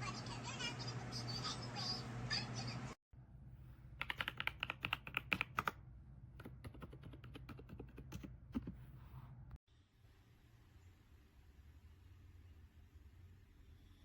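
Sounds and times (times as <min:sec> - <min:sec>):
mechanical keyboard typing: 0:04.0 - 0:05.8, 0:06.4 - 0:08.7.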